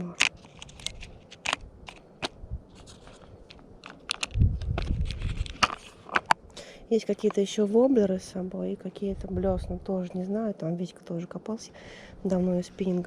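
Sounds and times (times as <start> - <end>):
plastic box clicks and rattles: 0.1 - 6.4
low rumble on microphone: 4.3 - 5.6, 9.0 - 10.0.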